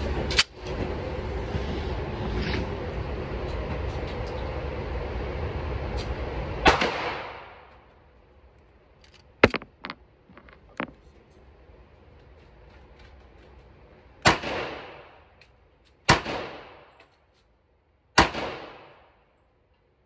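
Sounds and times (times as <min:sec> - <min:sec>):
loud thump: 0:09.4 - 0:11.0.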